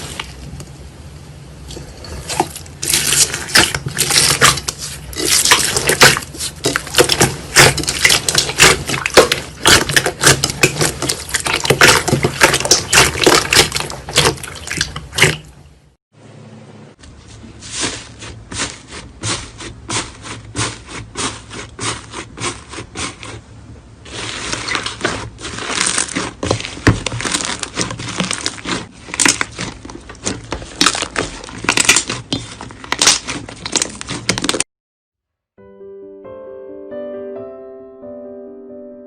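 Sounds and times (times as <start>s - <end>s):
crunchy slime crackling and popping: 2.2s - 15.5s, 24.1s - 34.6s.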